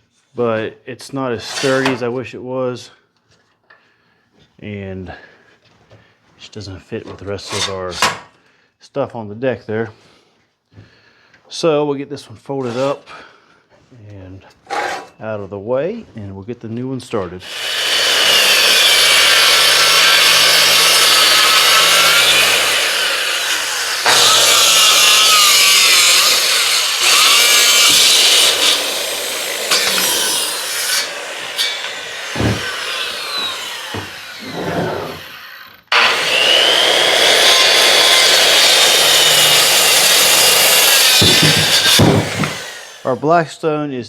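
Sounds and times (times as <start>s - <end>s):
power saw cutting wood: 1.4s - 2.1s, 14.7s - 15.1s, 17.4s - 43.4s.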